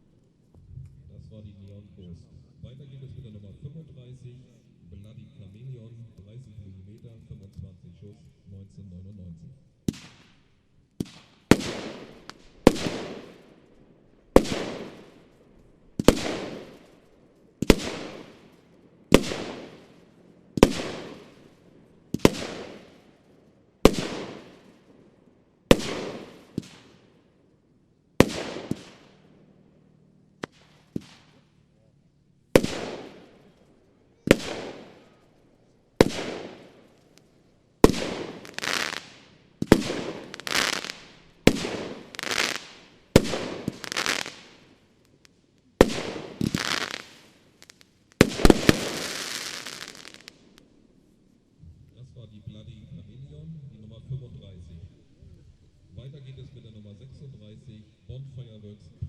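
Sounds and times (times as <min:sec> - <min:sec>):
firework battery bangs: 0:09.9 - 0:13.7, 0:16.0 - 0:17.0, 0:22.1 - 0:23.0, 0:25.7 - 0:27.1, 0:28.2 - 0:29.3, 0:30.4 - 0:31.4, 0:32.6 - 0:35.3, 0:36.0 - 0:44.8, 0:45.8 - 0:50.6.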